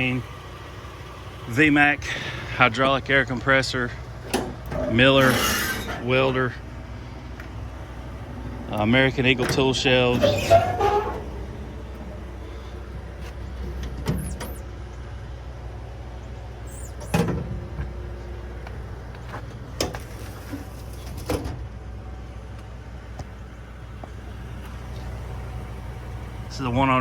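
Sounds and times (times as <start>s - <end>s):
truck engine idling: 0.0s - 27.0s
metal doors clunking shut: 4.2s - 6.5s, 8.4s - 14.6s, 16.7s - 17.9s, 19.7s - 21.7s.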